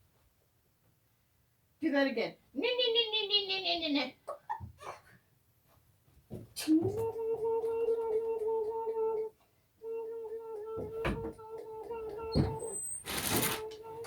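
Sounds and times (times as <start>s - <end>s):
person humming: 6.6s - 14.0s.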